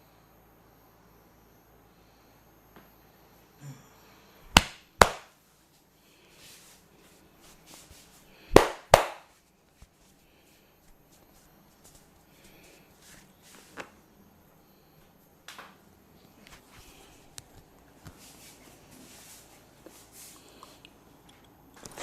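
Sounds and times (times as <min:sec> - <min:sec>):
hands smacking head: 0:04.5 - 0:05.3, 0:08.5 - 0:09.3.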